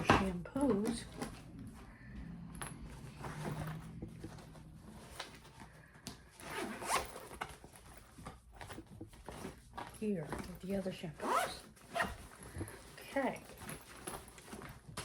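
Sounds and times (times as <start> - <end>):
bag rustling and handling: 0.0 - 15.0
zipper being pulled: 0.7 - 5.6, 6.2 - 7.6, 11.2 - 12.3.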